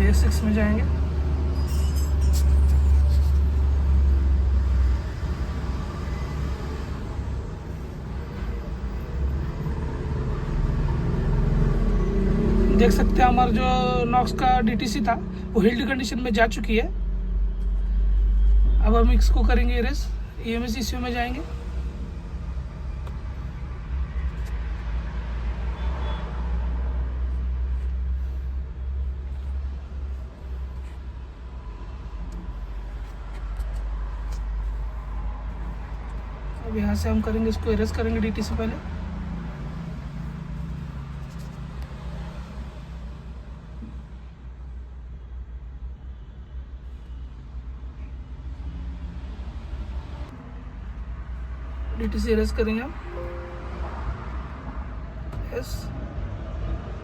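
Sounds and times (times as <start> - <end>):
vehicle rumble: 0.0 - 45.4.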